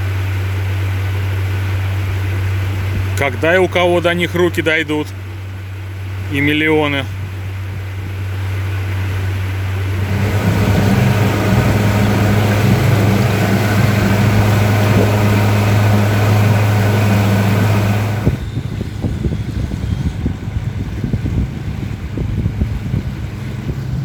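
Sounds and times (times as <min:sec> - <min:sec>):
boat engine humming: 0:00.0 - 0:24.0
rough wind-like rumble: 0:07.2 - 0:24.0.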